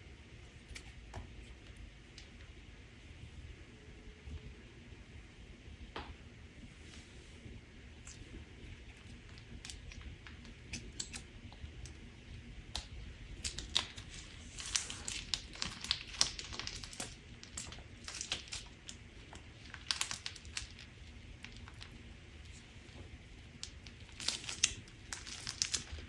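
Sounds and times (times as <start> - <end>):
slime crackling by hand: 8.9 - 26.0.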